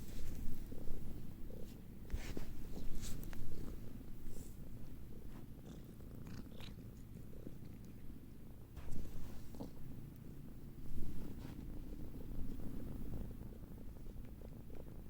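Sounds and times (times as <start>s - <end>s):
soft clicks and rustles: 0.0s - 5.6s, 8.8s - 15.0s
cat purring: 0.0s - 15.0s.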